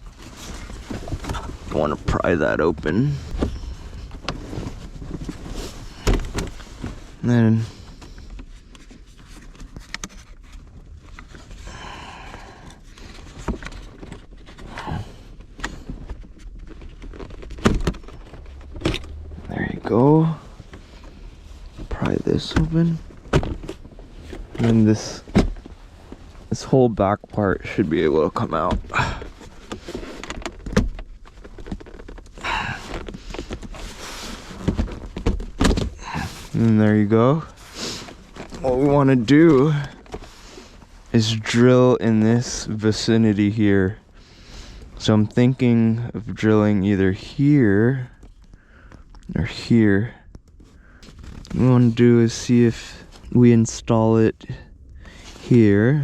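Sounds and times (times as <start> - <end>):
plastic panel scraping and rustling: 0.0 - 7.2, 12.8 - 26.2, 27.7 - 40.9
rustling scrape: 0.0 - 7.2, 31.2 - 35.2.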